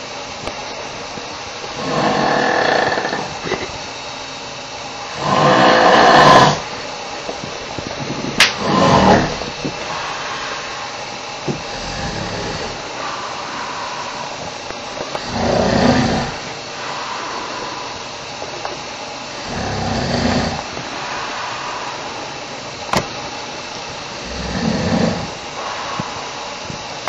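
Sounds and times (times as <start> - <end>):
background hiss: 0.0 - 27.0
man snoring loudly: 1.7 - 3.5, 5.1 - 6.7, 8.4 - 14.4, 15.1 - 18.0, 19.4 - 22.2, 24.0 - 26.5.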